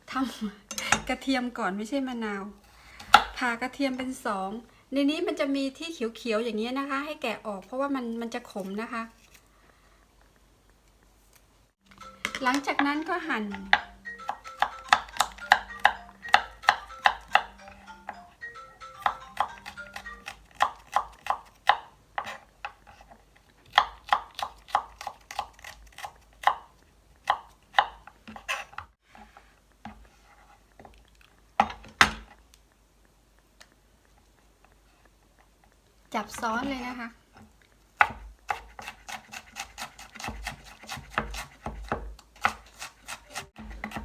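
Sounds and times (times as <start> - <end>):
knife chopping on cutting board: 3.0 - 3.4, 12.3 - 17.6, 19.0 - 23.0, 23.7 - 28.9, 38.0 - 44.0
faint background music: 11.8 - 21.4.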